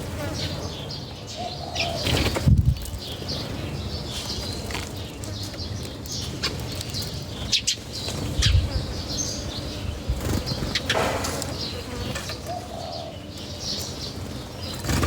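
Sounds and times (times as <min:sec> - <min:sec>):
birds chirping: 0:00.0 - 0:15.0
birds flapping wings: 0:14.6 - 0:15.0.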